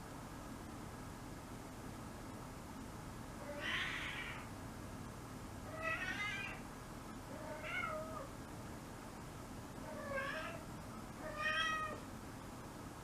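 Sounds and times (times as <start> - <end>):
kitten meowing: 3.5 - 4.4, 5.7 - 6.6, 10.0 - 10.6, 11.2 - 12.0.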